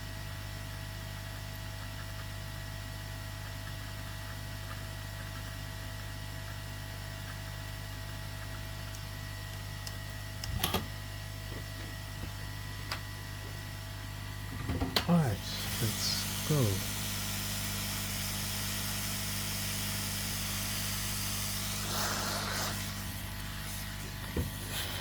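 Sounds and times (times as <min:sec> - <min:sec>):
electrical hum and hiss: 0:00.0 - 0:25.0.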